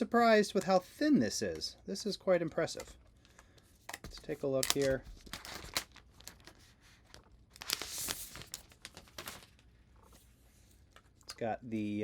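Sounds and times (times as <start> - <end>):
packaging wrap crinkling: 4.2 - 9.6.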